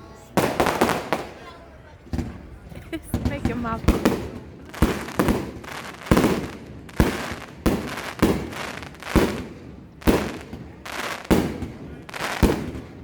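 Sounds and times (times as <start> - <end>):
fireworks bangs: 0.3 - 13.0.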